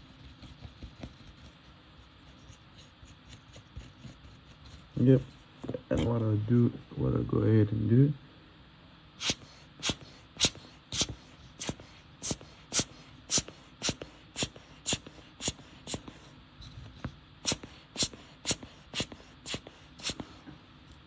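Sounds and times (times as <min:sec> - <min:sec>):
hand air blower puffing: 0:09.2 - 0:16.2, 0:17.4 - 0:20.5.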